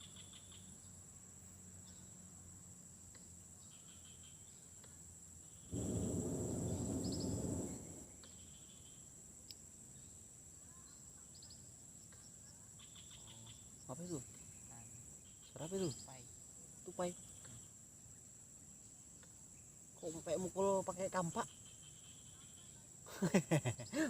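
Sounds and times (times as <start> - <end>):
insect drone: 0.0 - 24.0
rush of noise: 5.7 - 8.1.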